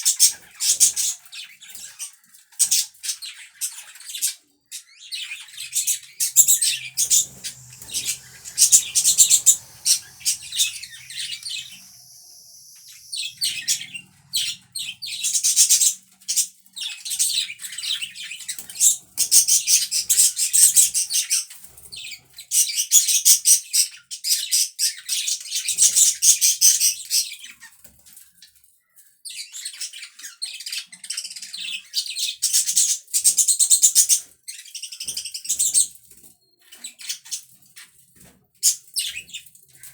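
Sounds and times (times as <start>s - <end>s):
budgerigars chirping and warbling: 6.4s - 15.2s.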